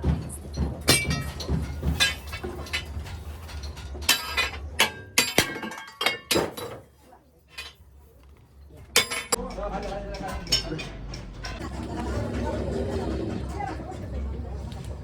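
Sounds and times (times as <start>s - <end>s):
metal clinking: 0.3s - 7.9s, 8.9s - 11.6s
low hum: 9.4s - 15.0s.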